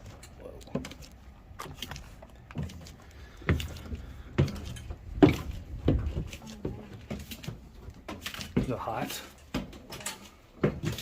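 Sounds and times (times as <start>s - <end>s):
heavy footsteps on hard floor: 2.5s - 8.8s.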